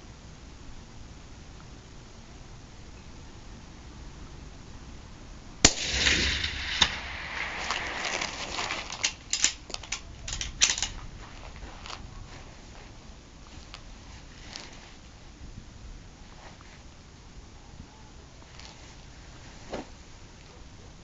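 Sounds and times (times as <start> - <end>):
suppressed rifle shot with echo: 5.6 - 10.9
sharp clicks: 5.7 - 11.1.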